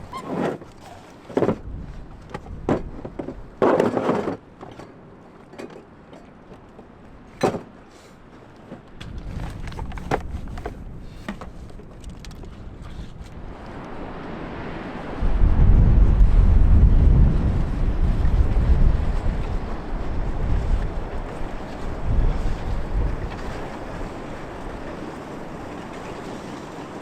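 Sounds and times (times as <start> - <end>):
knocks and scrapes: 0.0 - 6.3, 8.6 - 13.4
wind buffeting microphone: 1.5 - 3.6, 9.0 - 27.0.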